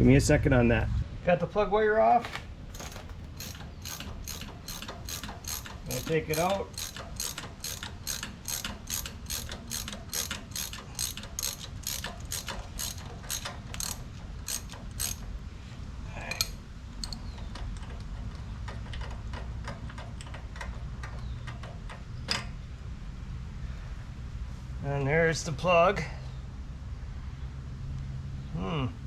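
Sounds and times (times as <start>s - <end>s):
ratchet wrench clicking: 2.7s - 15.3s.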